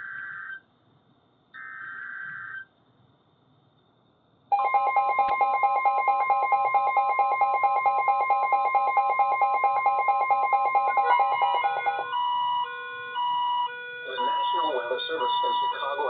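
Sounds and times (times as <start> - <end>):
steady alarm tone: 1.6 - 2.7, 4.5 - 16.0
fast electronic beeping: 4.6 - 12.3, 14.1 - 16.0.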